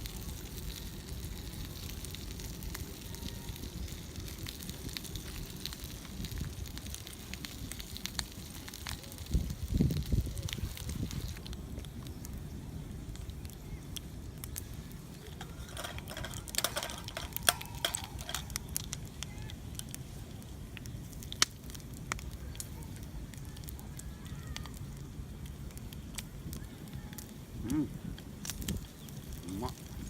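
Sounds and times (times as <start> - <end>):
wood fire crackling: 0.0 - 30.0
sharp pops and snaps: 13.1 - 30.0.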